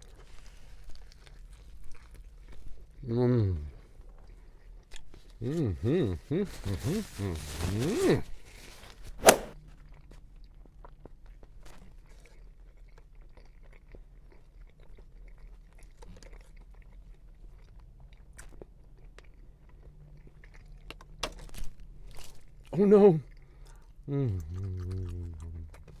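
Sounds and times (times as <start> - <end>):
person chewing crispy food: 0.0 - 3.0, 9.8 - 26.0.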